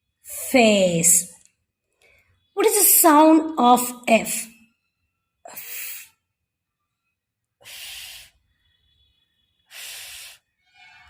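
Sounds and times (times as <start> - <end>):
person making breathy f sounds: 5.5 - 6.1, 7.6 - 8.3.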